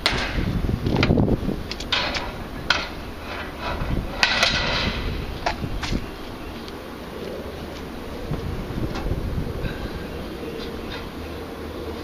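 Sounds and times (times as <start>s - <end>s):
equipment clanking and knocking: 1.8s - 5.6s.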